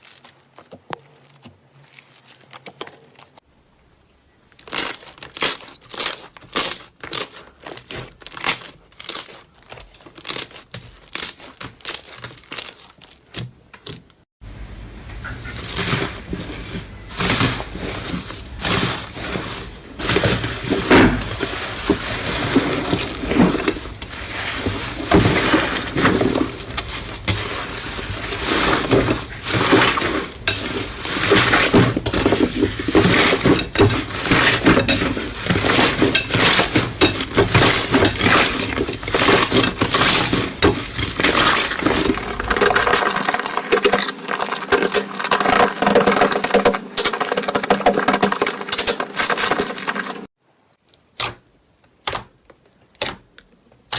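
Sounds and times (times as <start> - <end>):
slime crackling and popping: 4.6 - 13.9.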